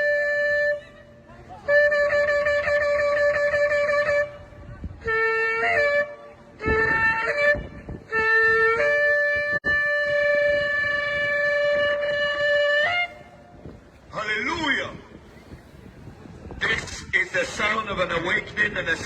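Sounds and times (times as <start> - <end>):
shofar blasts: 1.7 - 13.6.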